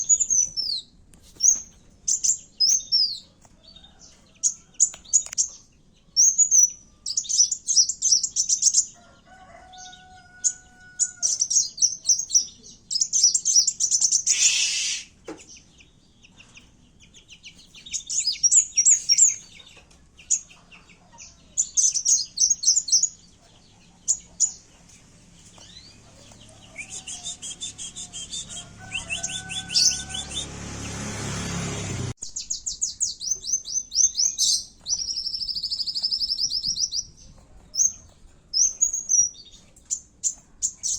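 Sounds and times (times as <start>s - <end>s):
songbird trilling and chattering: 17.8s - 19.5s, 21.2s - 23.3s, 32.2s - 37.2s
rushing noise: 26.7s - 32.2s.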